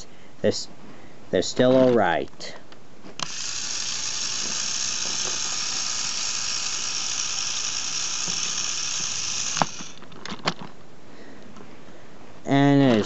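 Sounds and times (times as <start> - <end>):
toy electric motor whirring: 3.2 - 10.0.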